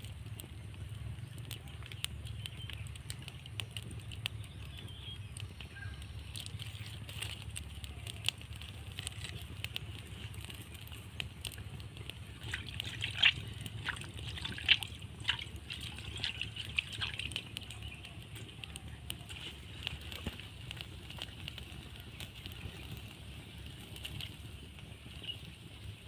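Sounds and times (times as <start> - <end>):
fire popping: 0.0 - 26.0
wood fire crackling: 0.0 - 26.0.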